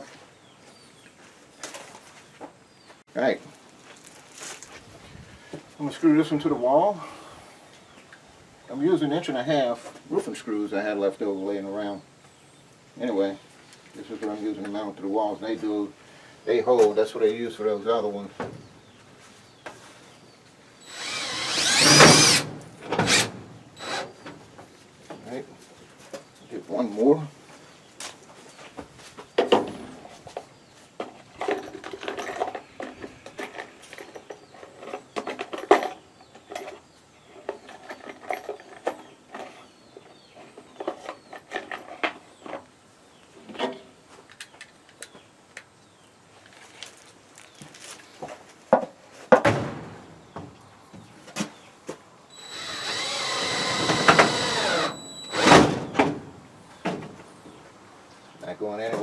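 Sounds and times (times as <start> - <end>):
power drill driving screw into wood: 20.8 - 24.3, 52.3 - 56.1.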